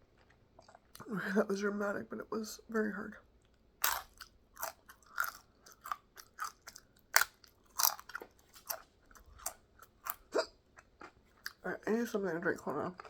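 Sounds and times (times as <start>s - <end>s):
person chewing crunchy food: 0.0s - 1.0s, 3.8s - 11.7s.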